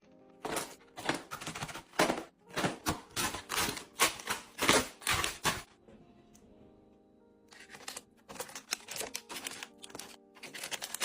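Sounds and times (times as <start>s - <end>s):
chocolates clacking: 7.5s - 11.0s
wrapper rustling: 7.5s - 11.0s.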